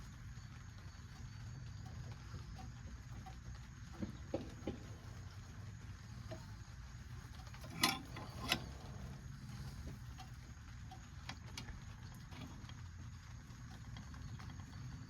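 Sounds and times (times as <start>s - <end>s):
wrench clinking on metal clamp: 7.6s - 8.9s.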